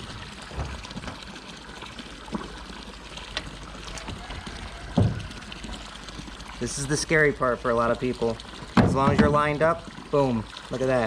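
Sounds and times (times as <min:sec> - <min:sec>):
light knocks and thump: 0:00.5 - 0:01.2, 0:04.9 - 0:05.2, 0:08.6 - 0:09.5.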